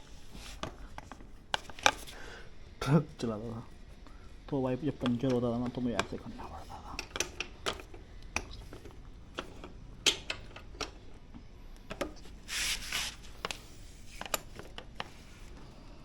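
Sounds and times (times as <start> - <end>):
metal scraping rub: 12.5 - 13.2.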